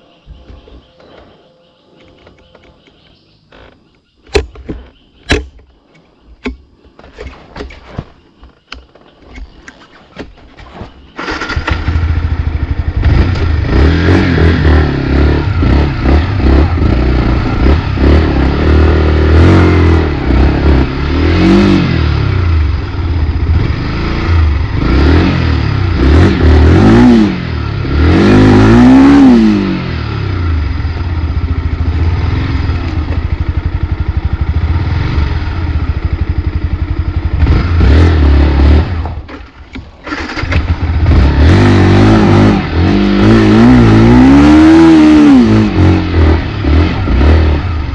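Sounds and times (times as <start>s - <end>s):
motorcycle engine revving: 10.6s - 47.9s.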